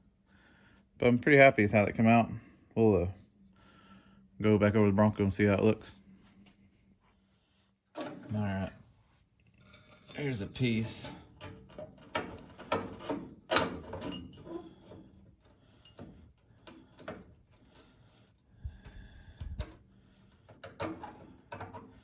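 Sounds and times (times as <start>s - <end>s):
metal panel clicks and scrapes: 10.9s - 14.8s.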